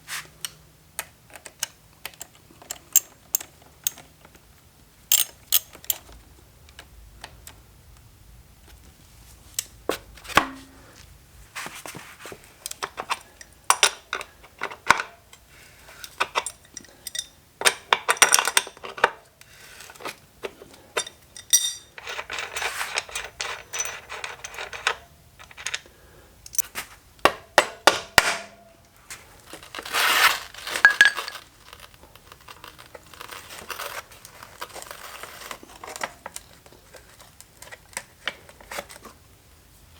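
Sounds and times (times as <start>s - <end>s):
rustling and scraping: 0.0s - 0.4s, 8.7s - 13.1s, 21.8s - 25.8s, 29.0s - 39.2s
metal tools clinking: 5.1s - 6.0s, 21.0s - 25.9s, 29.4s - 36.4s.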